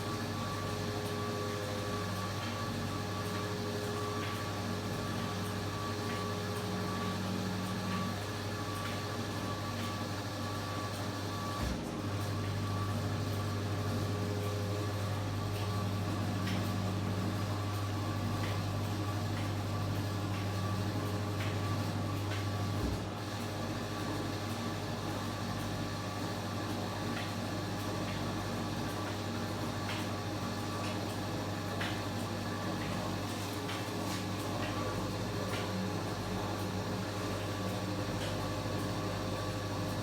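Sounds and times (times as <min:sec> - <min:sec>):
washing machine humming: 0:00.0 - 0:40.0.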